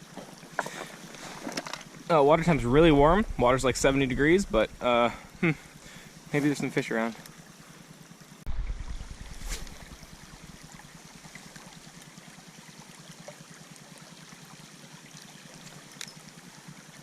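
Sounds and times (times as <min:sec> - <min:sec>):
creek water running: 0:00.0 - 0:17.0
low rumble: 0:02.2 - 0:06.0, 0:08.5 - 0:11.0.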